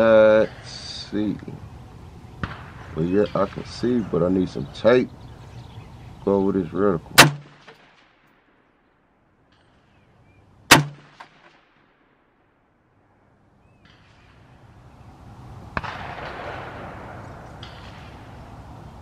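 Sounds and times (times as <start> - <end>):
rifle shot with echo: 2.4 - 3.8, 7.2 - 8.5, 10.7 - 12.3, 15.7 - 18.6.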